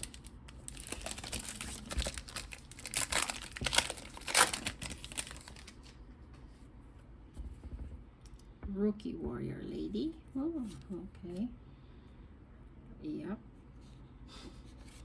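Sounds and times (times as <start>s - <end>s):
foil wrapper tearing and crinkling: 0.0s - 6.0s.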